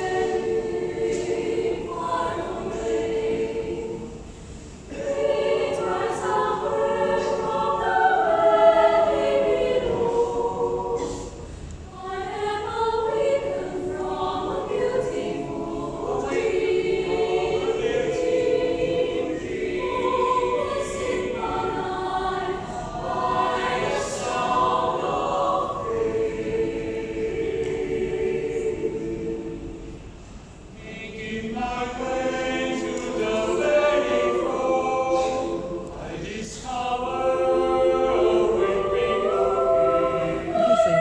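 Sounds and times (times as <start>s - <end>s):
choir singing held chords: 0.0s - 41.0s.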